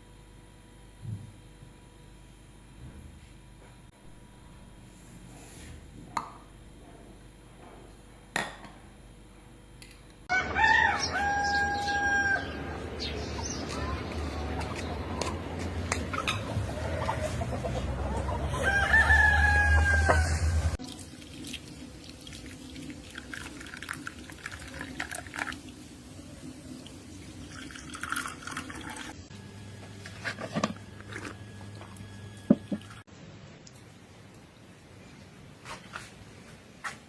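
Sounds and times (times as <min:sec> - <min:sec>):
rooster crowing: 0:10.3 - 0:12.9, 0:16.6 - 0:20.8.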